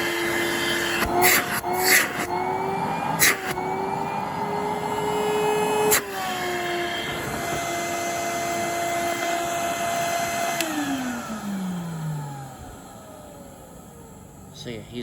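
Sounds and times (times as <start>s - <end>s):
vacuum cleaner motor whining: 0.0s - 15.0s
vacuum cleaner switch click: 8.5s - 11.4s.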